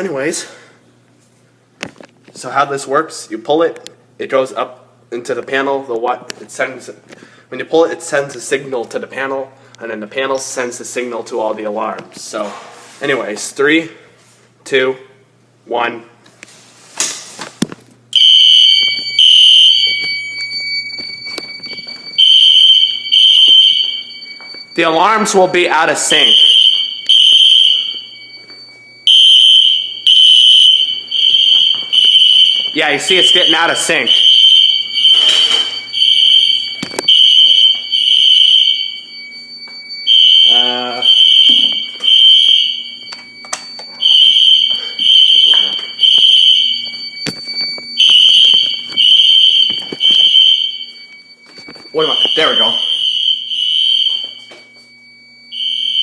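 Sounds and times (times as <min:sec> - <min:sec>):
fire alarm horn blasts: 0:18.1 - 0:56.0
fire alarm pull station clack: 0:18.2 - 0:25.4, 0:26.0 - 0:56.0.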